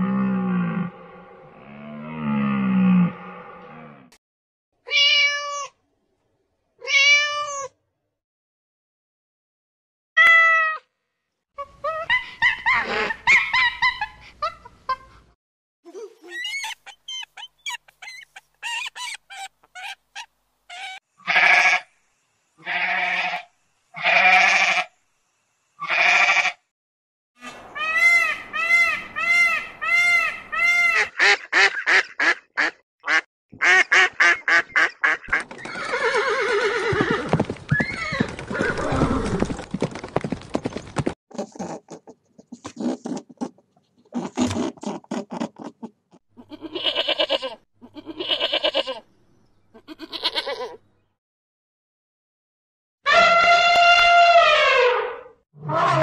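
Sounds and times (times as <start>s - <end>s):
animal calls: 15.9s - 21.8s.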